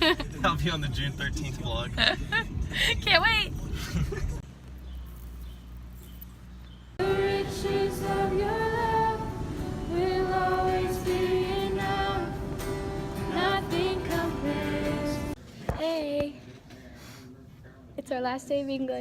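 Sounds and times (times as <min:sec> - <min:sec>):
music with long sung notes: 0:07.0 - 0:15.4.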